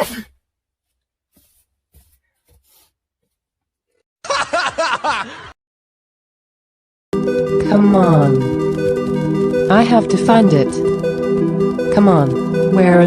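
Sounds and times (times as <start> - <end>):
person laughing: 4.2 - 5.5.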